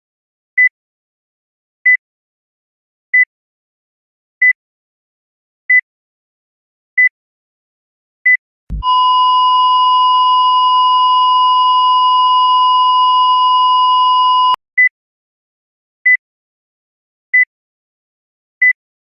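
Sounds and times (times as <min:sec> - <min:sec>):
heart monitor pulse beeps: 0:08.3 - 0:14.9
heart monitor flatline tone: 0:08.7 - 0:14.6.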